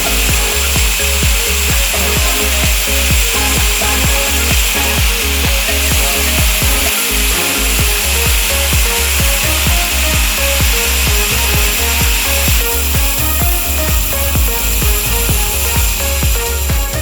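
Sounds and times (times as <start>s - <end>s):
background music with beat: 0.0s - 17.0s
grinder grinding steel: 0.0s - 17.0s.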